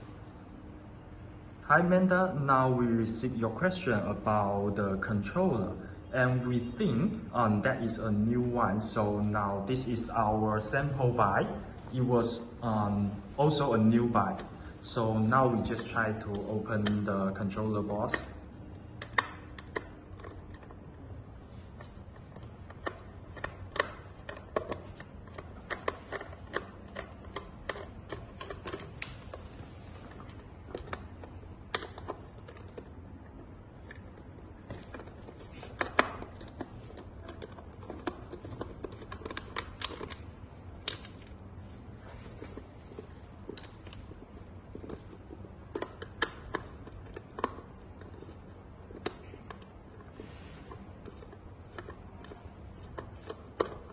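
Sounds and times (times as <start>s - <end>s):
low steady hum: 0.0s - 53.9s
hand tools clicking and tapping: 21.6s - 41.3s, 42.2s - 53.9s.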